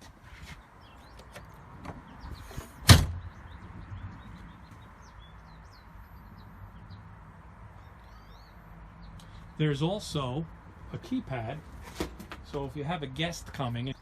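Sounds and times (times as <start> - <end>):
birds chirping faintly: 0.3 - 11.6
camper door banging shut: 2.8 - 3.3.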